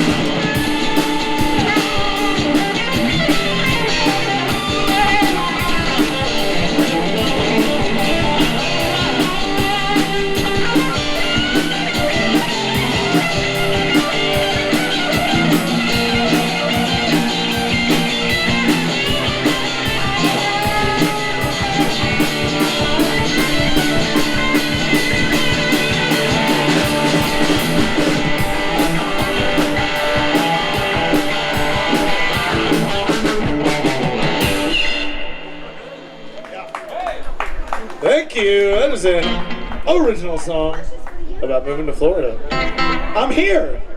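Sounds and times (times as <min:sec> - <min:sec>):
drum kit beat on cymbals: 0:00.0 - 0:35.0
bass guitar: 0:00.0 - 0:36.2, 0:38.7 - 0:40.5
electric guitar soloing: 0:00.0 - 0:37.1, 0:38.5 - 0:40.5, 0:42.4 - 0:43.9.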